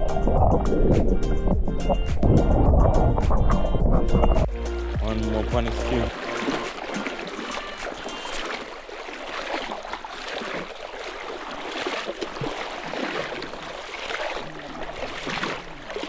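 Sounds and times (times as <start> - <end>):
river water rushing: 4.5 - 16.0.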